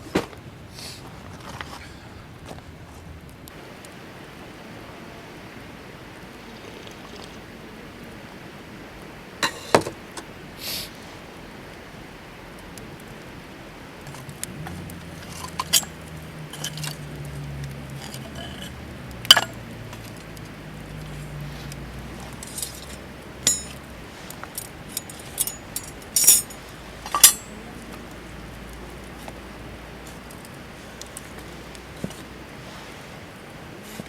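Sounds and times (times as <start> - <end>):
cookware and utensils clinking: 9.4 - 10.0, 15.2 - 20.1, 22.3 - 27.7.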